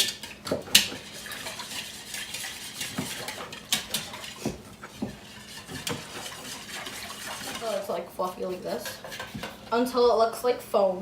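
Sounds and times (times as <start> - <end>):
whisk clicking against bowl: 0.0 - 7.8.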